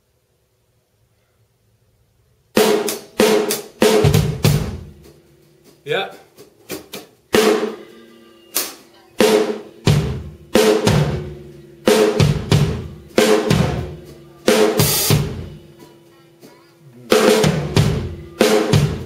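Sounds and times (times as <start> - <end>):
snare drum hits: 2.6 - 4.9, 11.9 - 15.6, 17.1 - 19.0
bass drum hits: 9.9 - 14.1.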